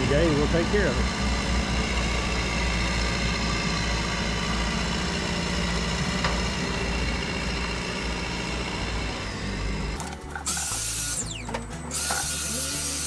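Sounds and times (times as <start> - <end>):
heavy engine idling: 0.0 - 13.0.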